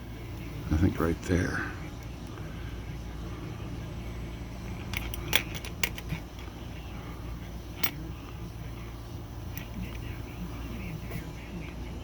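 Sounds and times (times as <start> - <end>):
steady low hum: 0.0 - 12.0
small metal parts clicking: 4.8 - 6.5.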